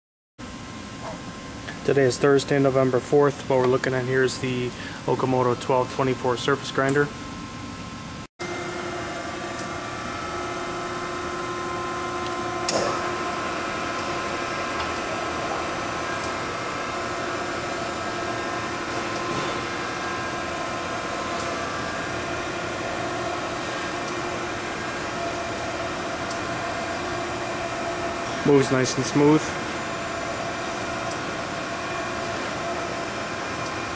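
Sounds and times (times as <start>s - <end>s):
surface grinder humming with whine: 8.4s - 33.9s.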